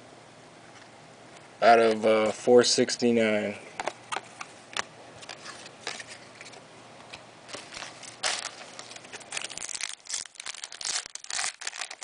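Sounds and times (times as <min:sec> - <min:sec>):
wrapper crinkling: 0:07.5 - 0:12.0.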